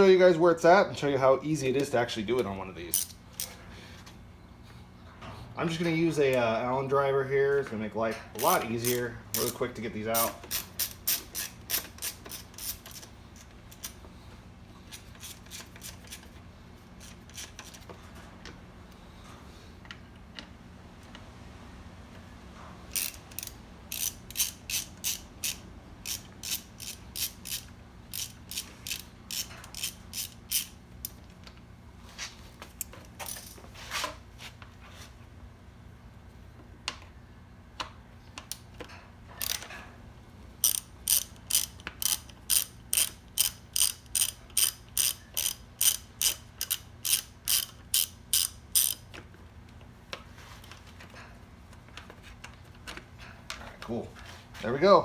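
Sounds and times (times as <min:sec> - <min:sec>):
ratcheting driver clicking: 0:08.4 - 0:09.6, 0:10.2 - 0:14.0, 0:22.9 - 0:31.2, 0:39.4 - 0:39.7, 0:40.6 - 0:49.2.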